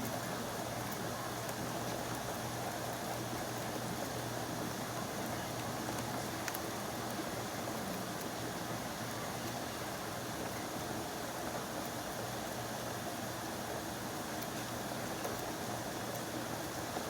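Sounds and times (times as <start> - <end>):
faint drip ticks: 5.6 - 7.2.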